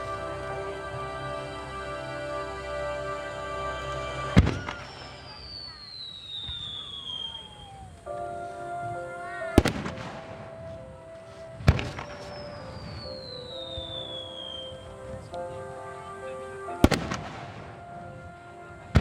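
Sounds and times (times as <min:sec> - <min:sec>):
background music: 0:00.0 - 0:05.7, 0:08.0 - 0:19.0
falling firework whistle: 0:04.2 - 0:08.0, 0:11.6 - 0:14.8.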